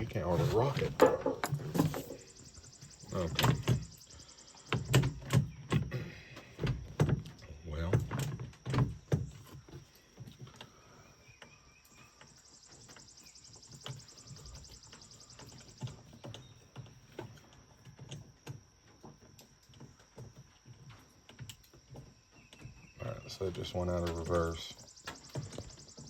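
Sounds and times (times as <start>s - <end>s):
insect trilling: 0.0s - 7.9s, 10.8s - 16.6s, 22.2s - 26.0s.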